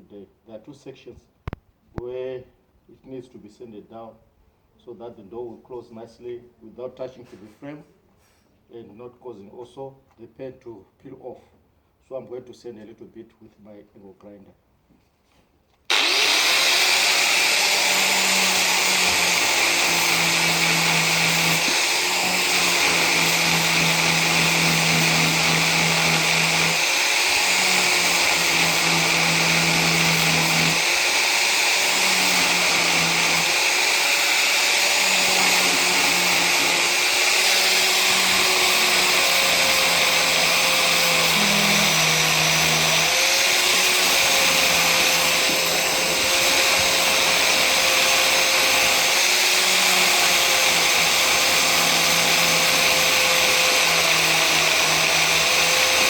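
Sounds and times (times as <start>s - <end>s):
angle grinder sanding: 15.9s - 56.0s.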